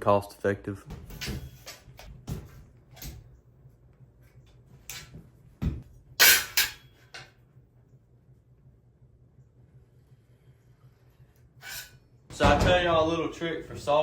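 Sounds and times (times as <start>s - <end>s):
metal objects clanking: 0.9s - 2.2s, 6.2s - 7.2s.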